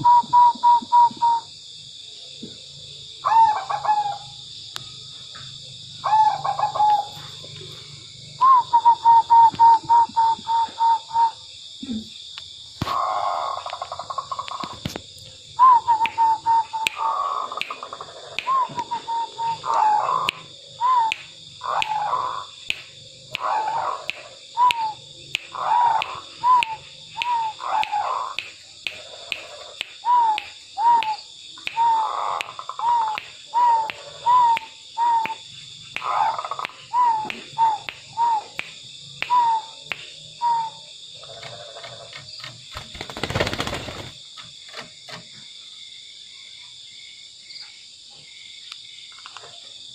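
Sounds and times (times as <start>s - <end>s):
dove cooing: 0.0s - 1.5s, 3.2s - 4.3s, 6.0s - 12.0s, 15.6s - 22.4s, 23.3s - 25.0s, 31.8s - 35.4s, 36.0s - 38.6s
high insect buzz: 0.0s - 49.2s.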